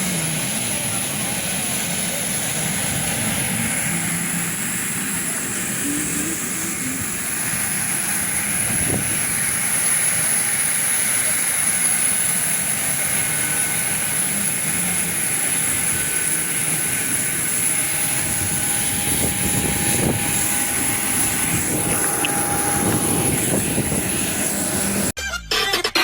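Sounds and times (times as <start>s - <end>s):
airliner engine rush: 0.0s - 25.2s.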